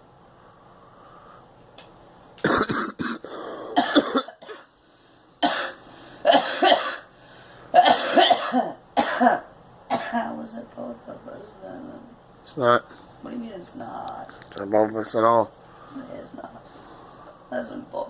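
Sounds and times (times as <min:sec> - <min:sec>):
girl coughing: 0:02.4 - 0:03.2, 0:03.8 - 0:04.7, 0:05.4 - 0:07.1, 0:07.8 - 0:10.4.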